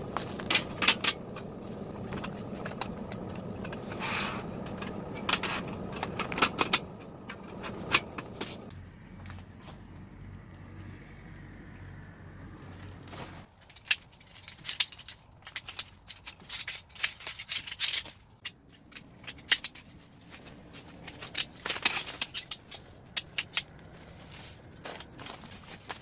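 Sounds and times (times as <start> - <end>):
low steady hum: 0.0 - 13.5, 18.6 - 26.0
gear being handled: 12.8 - 26.0.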